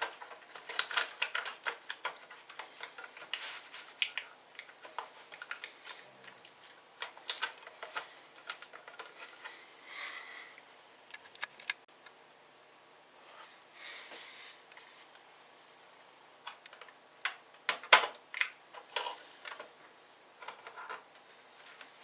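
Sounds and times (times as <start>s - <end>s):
soft rustle: 0.0s - 6.7s, 13.2s - 15.3s, 19.1s - 22.0s
clicks and taps of small parts: 0.0s - 9.3s.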